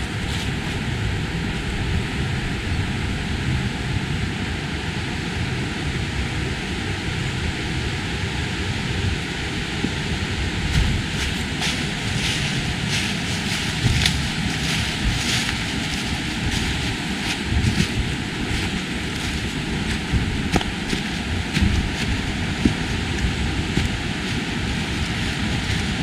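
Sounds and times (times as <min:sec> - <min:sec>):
footsteps crunching on a path: 0:00.0 - 0:00.9, 0:10.7 - 0:26.0
low uneven rumble: 0:00.0 - 0:26.0
steady rushing noise: 0:00.0 - 0:26.0.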